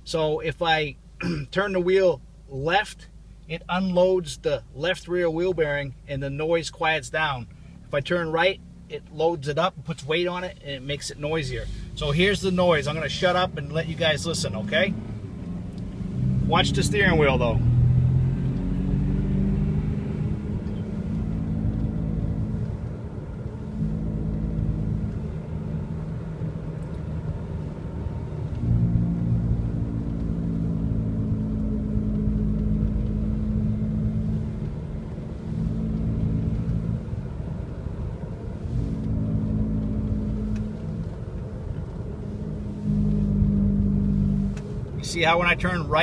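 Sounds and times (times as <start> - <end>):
wheel bearing droning hum: 9.9 - 46.0.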